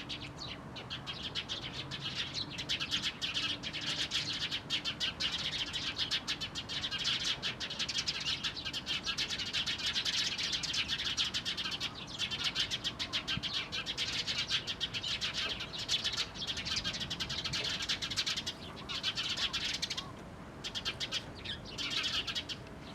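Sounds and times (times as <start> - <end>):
sparrows chirping: 0.0 - 22.9.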